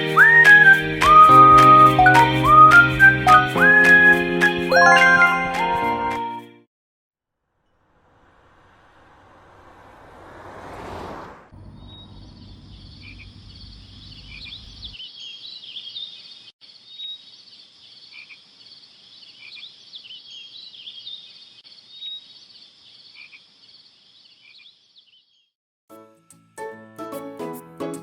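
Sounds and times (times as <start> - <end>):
low rumble: 7.8 - 15.0
insects chirping: 11.5 - 15.0
frogs croaking: 11.6 - 15.0, 16.7 - 20.5, 21.7 - 24.8.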